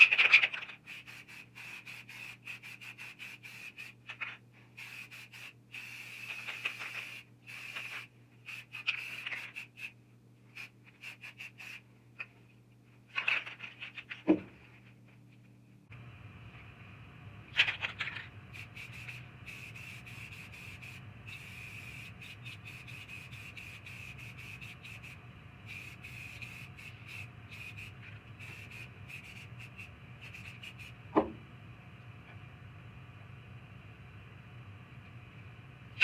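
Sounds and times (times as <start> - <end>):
low steady hum: 3.6 - 11.0, 11.6 - 36.0.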